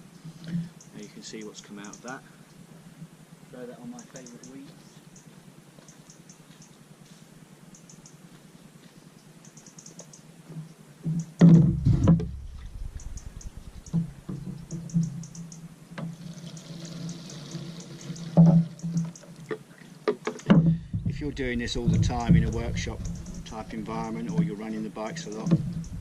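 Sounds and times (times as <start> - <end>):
handling knocks: 20.1 - 26.0.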